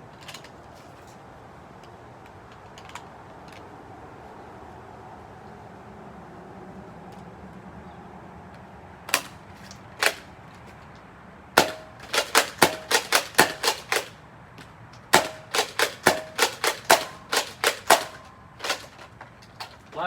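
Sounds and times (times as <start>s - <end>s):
toy pistol shots: 9.1s - 9.4s, 10.0s - 10.3s, 11.6s - 14.2s, 15.1s - 19.1s.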